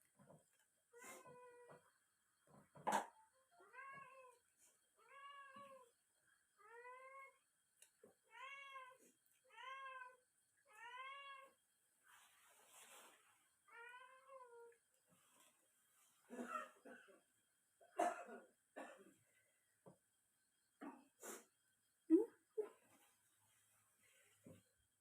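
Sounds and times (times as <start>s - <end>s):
noisy rustle: 12.0s - 13.6s.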